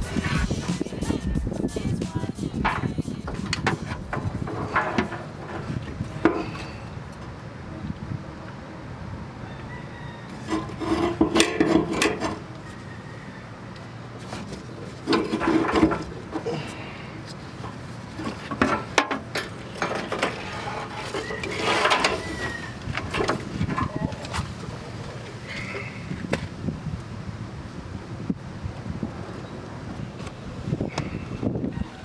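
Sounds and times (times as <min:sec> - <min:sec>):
scraping and rubbing: 0:00.0 - 0:07.0, 0:10.3 - 0:13.0, 0:14.1 - 0:26.5.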